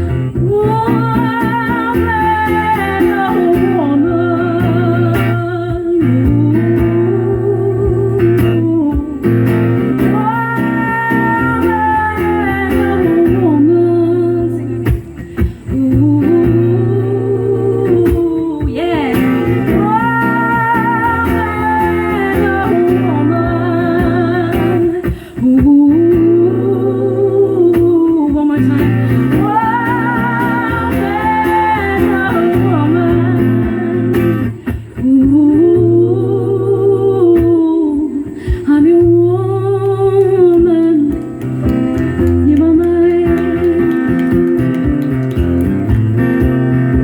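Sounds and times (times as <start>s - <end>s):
acoustic guitar plucked and strummed: 0.0s - 47.0s
woman singing with vibrato: 0.0s - 47.0s
singer breathing: 15.1s - 15.8s, 25.0s - 25.4s, 34.4s - 35.0s, 38.2s - 38.7s.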